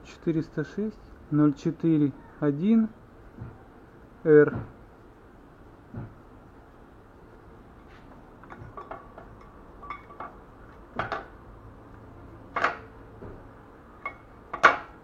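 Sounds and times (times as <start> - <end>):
metal engine parts clinking: 8.4 - 11.4, 12.4 - 13.0, 14.0 - 15.0.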